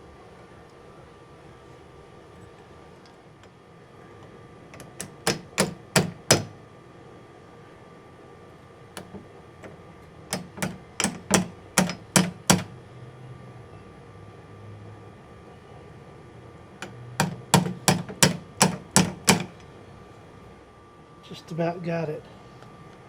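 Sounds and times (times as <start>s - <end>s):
hammer tapping metal pin: 4.8s - 6.6s, 9.0s - 12.8s, 16.8s - 19.6s.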